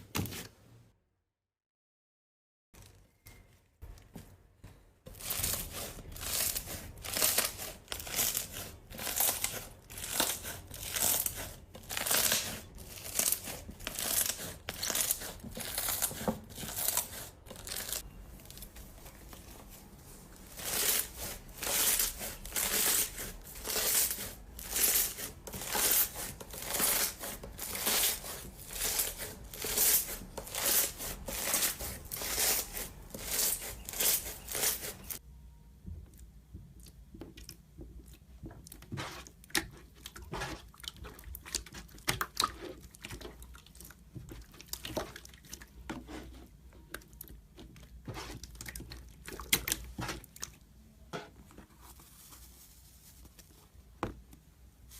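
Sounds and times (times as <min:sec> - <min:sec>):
slime squishing and crackling: 0:05.1 - 0:18.8.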